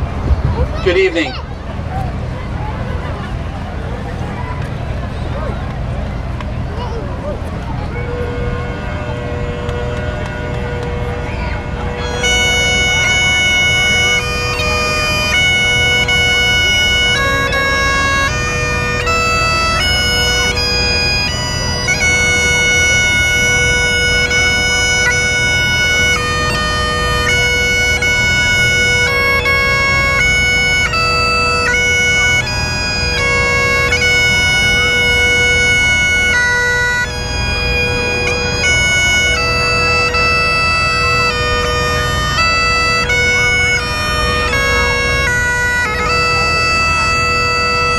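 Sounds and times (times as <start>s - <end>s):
bagpipes playing melody: 0.8s - 1.4s, 7.5s - 47.9s.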